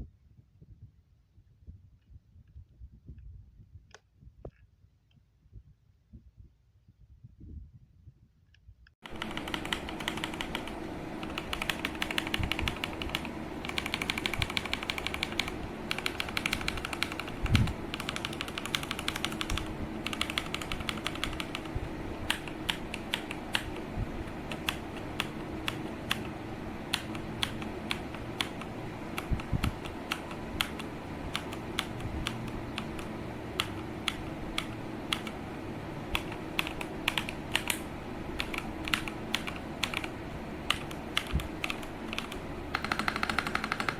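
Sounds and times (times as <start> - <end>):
mechanical keyboard typing: 9.0 - 35.4, 36.1 - 43.9.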